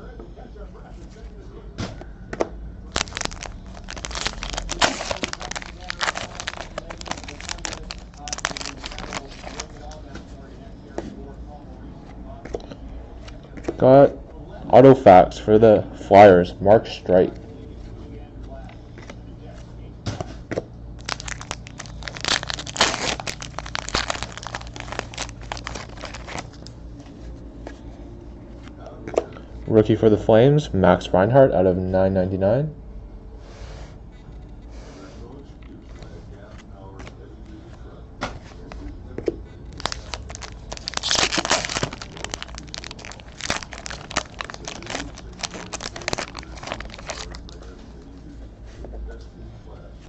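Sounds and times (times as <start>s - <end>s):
card pack wrappers crinkling: 2.9s - 10.1s, 21.0s - 26.7s, 39.7s - 48.1s.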